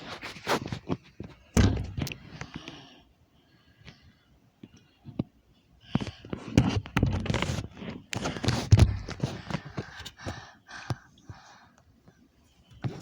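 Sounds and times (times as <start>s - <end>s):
knocks and clatter of hard objects: 0.7s - 2.2s, 6.0s - 10.0s.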